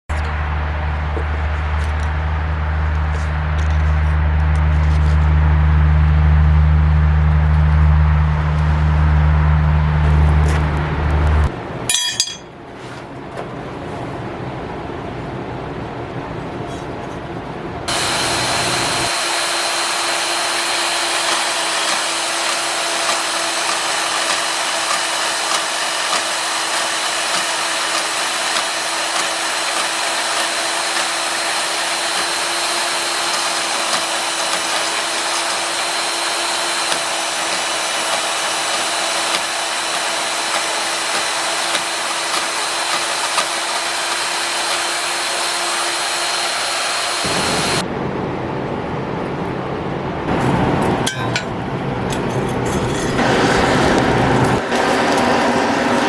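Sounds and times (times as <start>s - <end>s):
motor-driven blower whirring: 17.9s - 47.9s, 53.1s - 56.0s.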